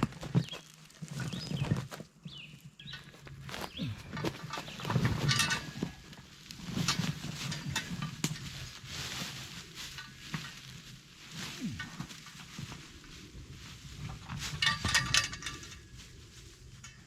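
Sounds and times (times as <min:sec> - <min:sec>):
objects clicking and clattering: 0:02.8 - 0:08.6, 0:14.2 - 0:16.1.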